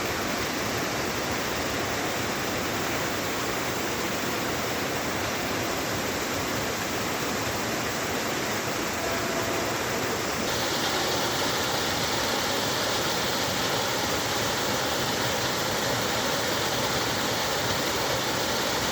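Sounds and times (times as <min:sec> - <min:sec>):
waterfall rushing: 0:01.6 - 0:18.9.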